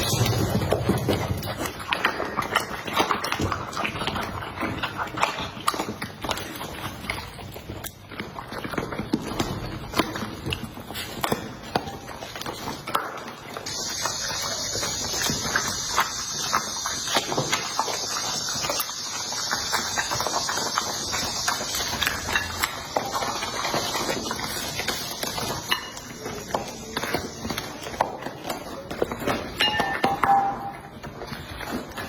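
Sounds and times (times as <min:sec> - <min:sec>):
steady hiss: 0:13.7 - 0:25.8.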